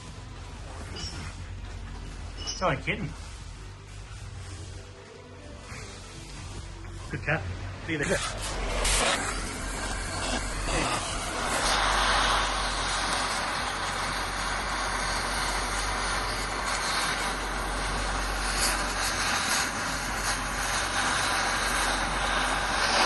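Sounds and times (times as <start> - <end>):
cutting torch roaring: 7.1 - 23.0.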